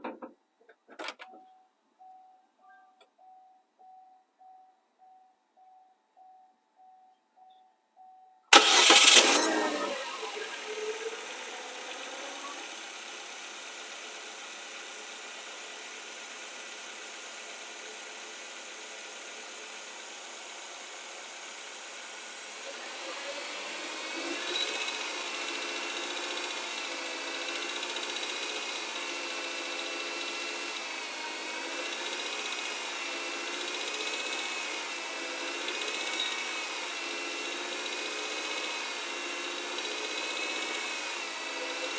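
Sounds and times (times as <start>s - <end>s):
car engine starting and idling: 8.5s - 41.9s.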